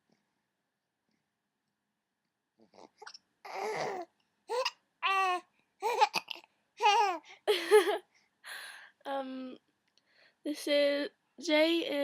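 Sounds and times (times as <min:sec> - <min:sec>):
baby babbling and cooing: 0:02.6 - 0:07.3.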